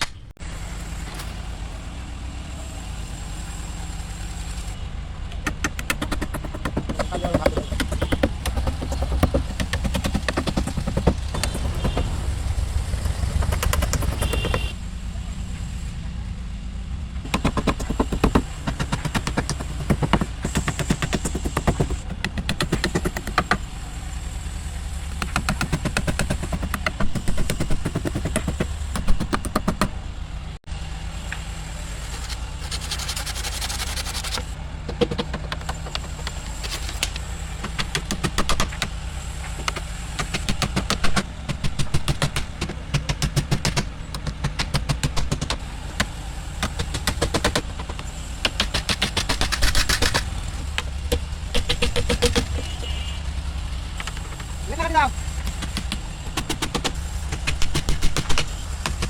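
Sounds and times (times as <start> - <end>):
rapid clicking and tapping: 5.3 - 14.8, 17.3 - 23.8, 25.1 - 30.0, 32.6 - 53.0, 53.6 - 59.0
tool motor running: 5.4 - 14.8, 17.2 - 30.1.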